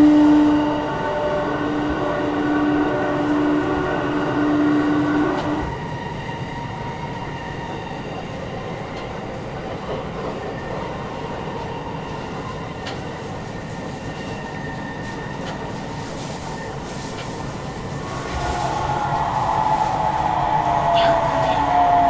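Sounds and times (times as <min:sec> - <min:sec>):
train wheels rumbling: 0:00.0 - 0:06.0, 0:12.8 - 0:22.0.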